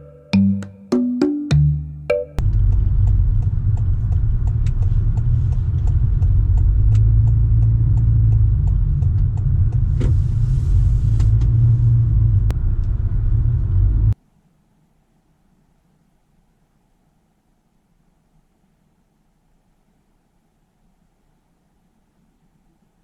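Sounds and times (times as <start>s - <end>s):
faint light ticks: 2.4s - 9.9s
car driving rumble from inside: 2.4s - 14.2s.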